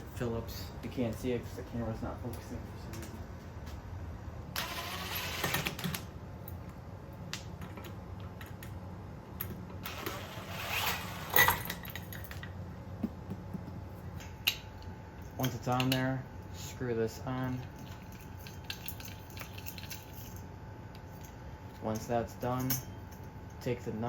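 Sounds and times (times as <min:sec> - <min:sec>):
metal hardware clinking: 0:14.1 - 0:16.2, 0:17.4 - 0:23.6.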